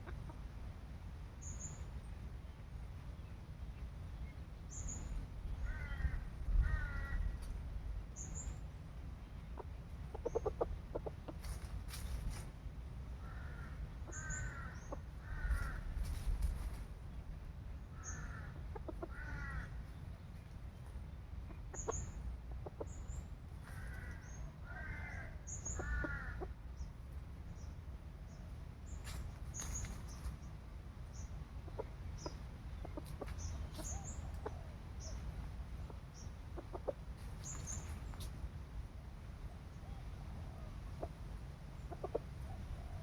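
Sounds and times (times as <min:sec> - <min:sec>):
chicken clucking: 0:00.0 - 0:00.5, 0:09.2 - 0:12.5, 0:18.5 - 0:24.7, 0:31.2 - 0:38.4, 0:40.0 - 0:43.0
steady low rumble: 0:00.0 - 0:43.0.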